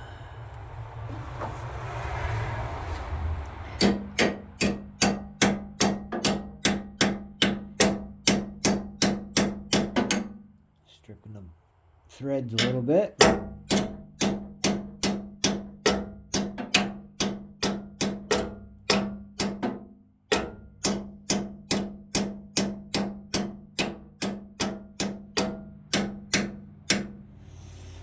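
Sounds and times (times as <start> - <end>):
wrench striking metal: 3.8 - 10.5, 12.5 - 27.2.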